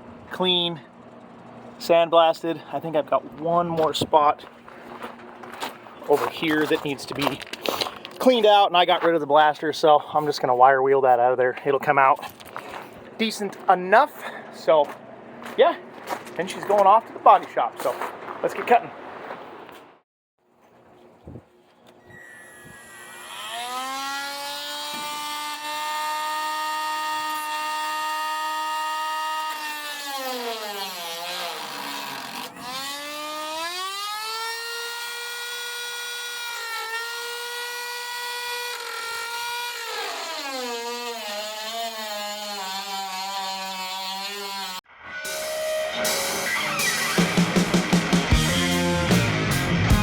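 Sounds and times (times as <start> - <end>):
wire wheel grinding steel: 22.2 - 45.5.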